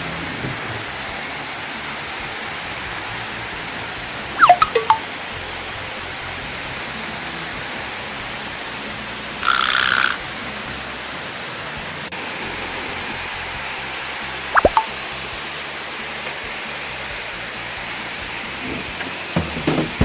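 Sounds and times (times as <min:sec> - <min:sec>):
loud hiss: 0:00.0 - 0:20.0
waterfall rushing: 0:00.0 - 0:20.0
water plops: 0:04.4 - 0:05.1, 0:14.5 - 0:15.0.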